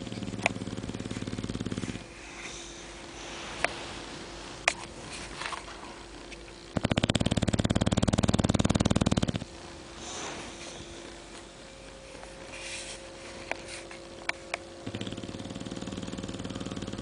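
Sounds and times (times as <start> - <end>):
dog snoring: 0.0 - 3.8, 5.9 - 11.8, 13.5 - 17.0.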